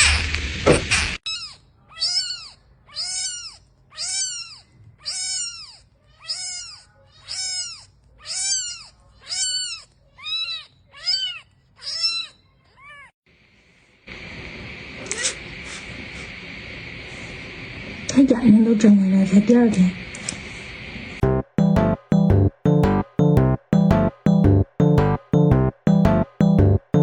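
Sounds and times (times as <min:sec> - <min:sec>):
kitten meowing: 0:01.3 - 0:13.1.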